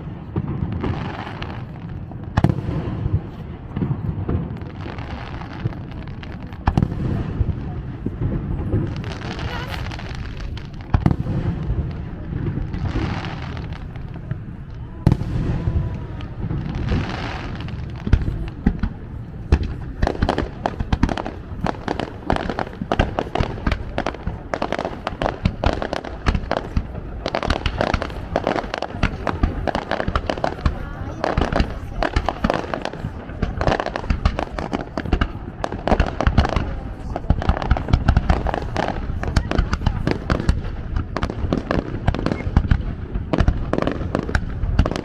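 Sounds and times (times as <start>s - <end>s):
fireworks booming: 0.0s - 45.0s
sharp firework bangs: 0.0s - 45.0s.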